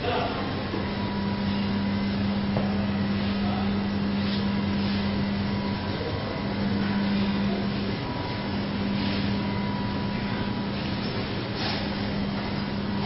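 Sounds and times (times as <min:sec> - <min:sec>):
machine hum: 0:00.0 - 0:13.0.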